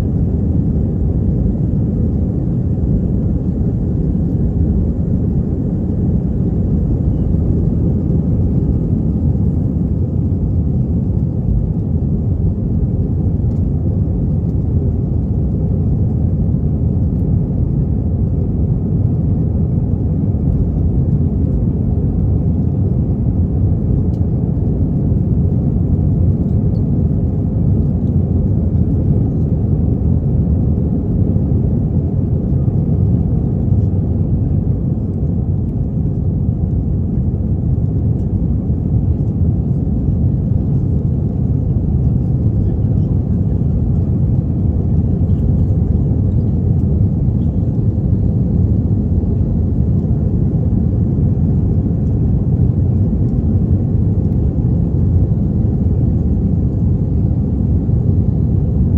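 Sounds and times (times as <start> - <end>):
airplane cabin engine rumble: 0.0 - 58.9.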